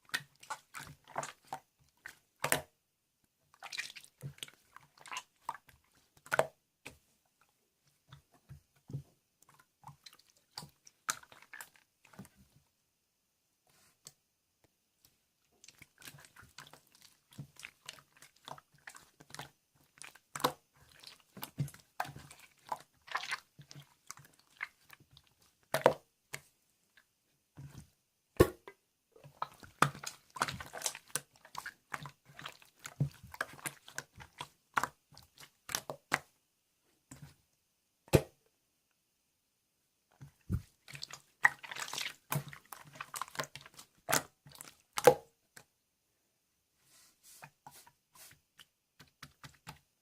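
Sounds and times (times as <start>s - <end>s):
slime squishing with wet clicks: 0.0s - 2.8s, 3.5s - 7.0s, 8.0s - 12.5s, 13.8s - 36.4s, 40.1s - 45.7s, 48.5s - 49.9s.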